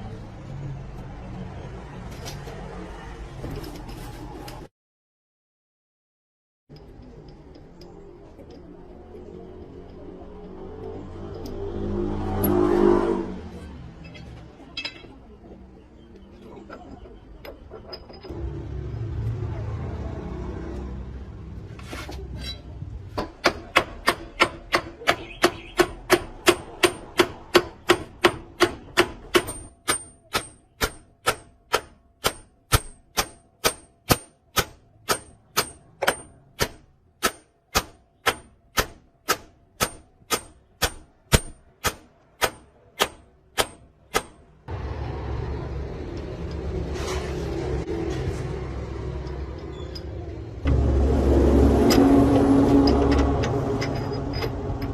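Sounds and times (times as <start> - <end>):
hammer striking metal: 22.4 - 44.6
low rumble: 50.6 - 54.9.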